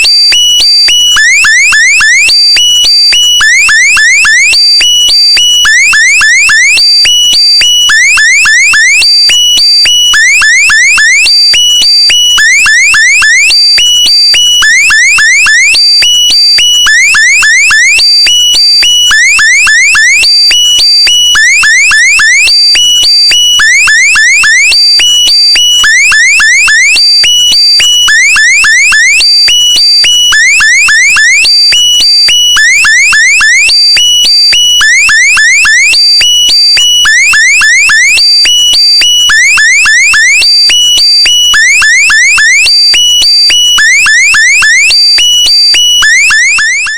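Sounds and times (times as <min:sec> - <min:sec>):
electronic alarm rising chirps: 0:10.2 - 0:11.2, 0:12.4 - 0:13.6, 0:16.9 - 0:18.1, 0:21.3 - 0:22.6, 0:32.9 - 0:33.6, 0:37.1 - 0:38.1, 0:41.6 - 0:42.6, 0:43.7 - 0:46.9.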